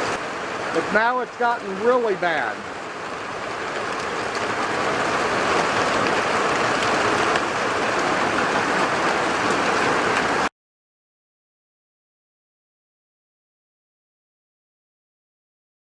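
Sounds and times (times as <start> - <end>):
heavy rain pouring: 0.0 - 10.5.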